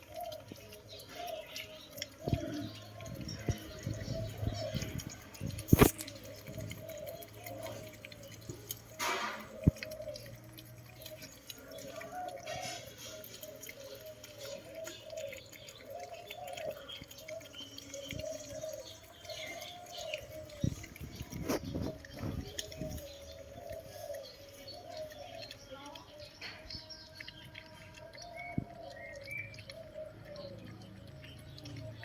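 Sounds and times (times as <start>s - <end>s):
puppies eating wet smacks: 0.0s - 32.0s.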